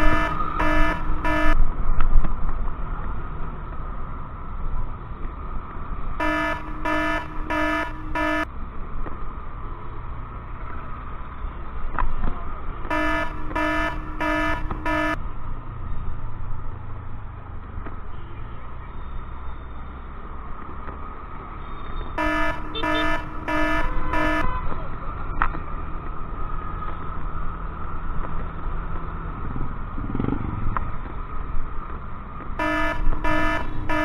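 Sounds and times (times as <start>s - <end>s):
electronic beeper short beeps: 0.0s - 1.6s, 6.2s - 8.5s, 12.9s - 15.2s, 22.2s - 24.4s, 32.6s - 34.0s
scooter running on road: 0.0s - 4.1s, 6.2s - 11.1s, 12.4s - 15.5s, 22.2s - 34.0s.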